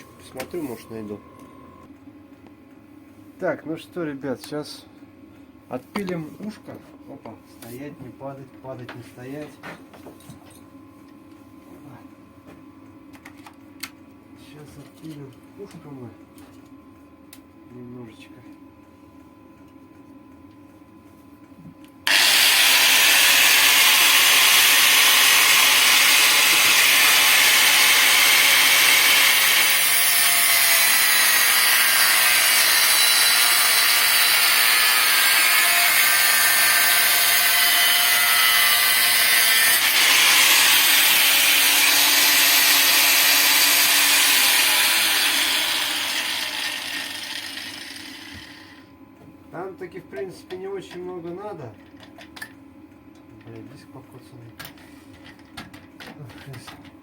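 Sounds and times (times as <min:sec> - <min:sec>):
angle grinder cutting: 0:22.1 - 0:48.8.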